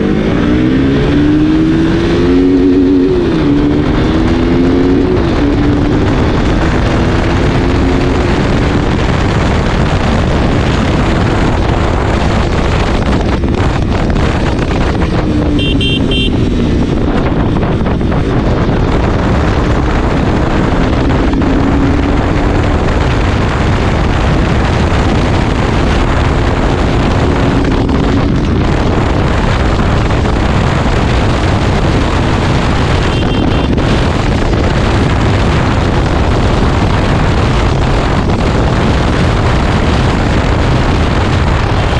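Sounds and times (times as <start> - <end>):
motorcycle engine running: 0.0 - 41.9
wind noise on microphone: 0.0 - 41.9
short high beep: 15.6 - 16.4.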